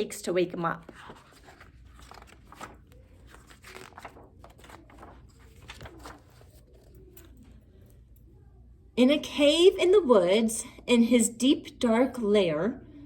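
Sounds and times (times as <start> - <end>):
pages turning: 0.8 - 7.4
paper rustling: 0.8 - 7.6.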